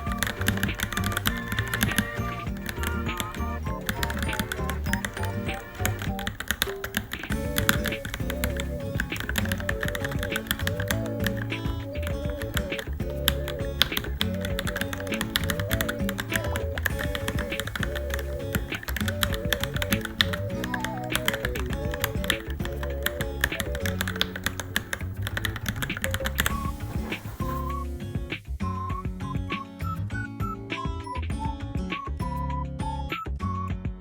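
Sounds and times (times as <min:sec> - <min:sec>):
fast typing on mechanical keyboard: 0:00.0 - 0:26.6
background music: 0:00.0 - 0:34.0.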